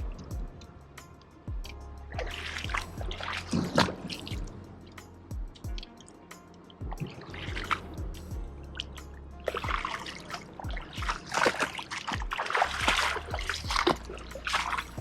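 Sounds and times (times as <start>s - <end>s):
music with thumping beat: 0.0s - 8.8s, 9.5s - 15.0s
water splashing and trickling: 0.0s - 15.0s.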